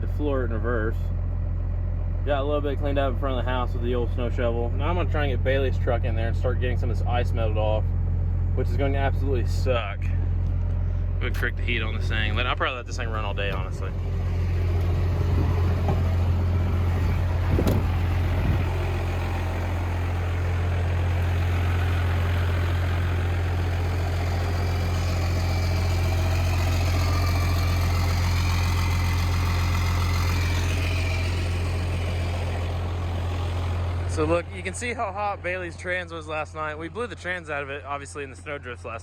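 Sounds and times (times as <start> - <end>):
truck engine idling: 0.0 - 39.0.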